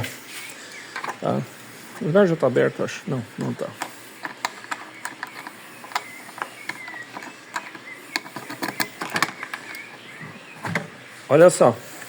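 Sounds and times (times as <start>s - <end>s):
key clicking in a plastic lock: 3.8s - 9.9s.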